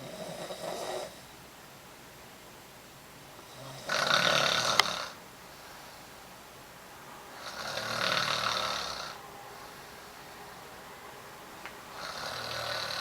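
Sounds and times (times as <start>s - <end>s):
woman snoring loudly: 0.0s - 1.2s, 3.5s - 5.2s, 7.4s - 9.2s, 11.9s - 13.0s.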